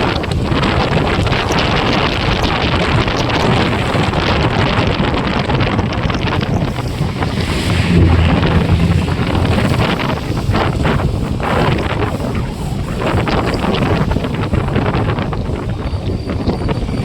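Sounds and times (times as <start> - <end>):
motorcycle engine and road noise: 0.0 - 17.0
wind buffeting microphone: 0.0 - 17.0
low hum: 6.4 - 11.4.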